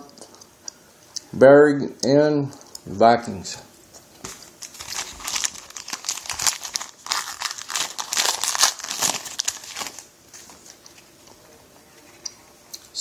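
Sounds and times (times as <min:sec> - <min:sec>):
wrapper crinkling and tearing: 0:04.2 - 0:10.8.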